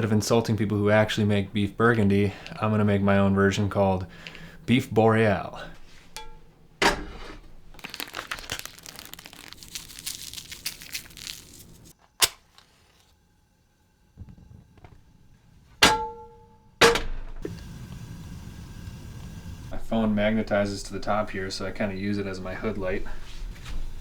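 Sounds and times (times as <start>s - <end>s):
steady low hiss: 0.0s - 7.8s, 16.5s - 24.0s
packaging crinkling and tearing: 7.7s - 13.1s
sharp ringing knocks: 15.8s - 17.4s.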